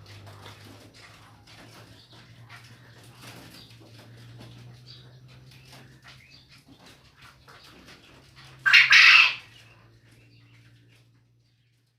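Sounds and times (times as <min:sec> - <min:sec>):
quail two-note call: 0:08.7 - 0:09.4.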